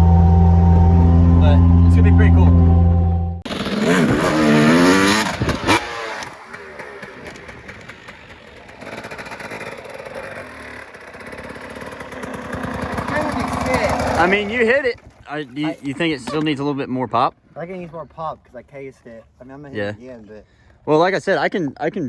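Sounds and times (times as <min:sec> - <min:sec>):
dirt bike engine revving: 0:00.0 - 0:16.4.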